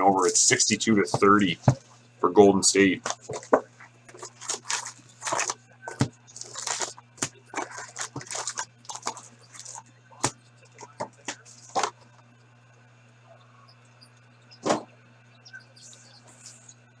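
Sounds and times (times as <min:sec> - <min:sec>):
faint low hum: 0:00.0 - 0:17.0
wrapper rustling and tearing: 0:03.1 - 0:09.8, 0:10.8 - 0:11.9.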